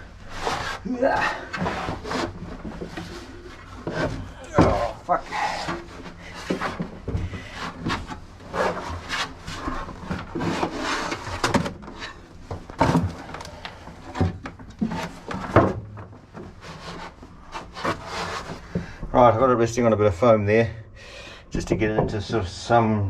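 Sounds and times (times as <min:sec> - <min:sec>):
heavy box scraping on wood: 0:00.2 - 0:11.5, 0:16.5 - 0:18.9.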